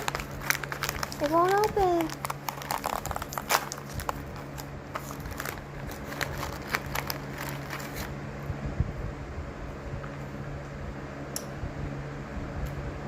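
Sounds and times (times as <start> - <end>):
plastic packaging crinkling: 0.0 - 8.2
low hum: 0.0 - 13.0.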